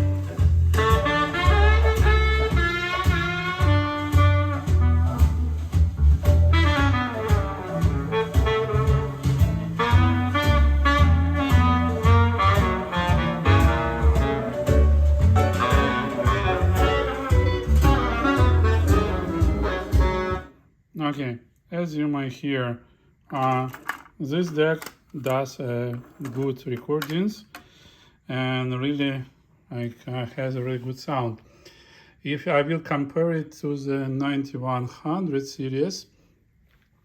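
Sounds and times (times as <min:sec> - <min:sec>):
jazz music from cassette: 0:00.0 - 0:20.5.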